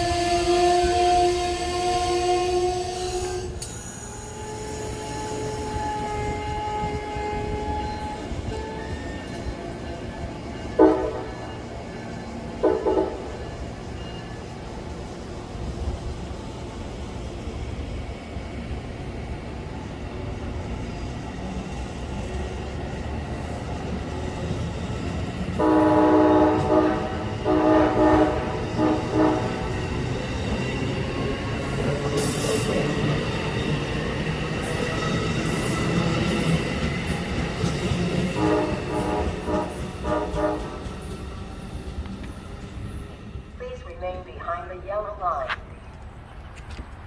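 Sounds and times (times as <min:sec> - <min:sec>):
train horn blasts: 0:00.0 - 0:09.6, 0:10.6 - 0:11.7, 0:12.6 - 0:13.4, 0:25.5 - 0:30.1, 0:38.2 - 0:41.3
train rumbling: 0:00.0 - 0:47.0.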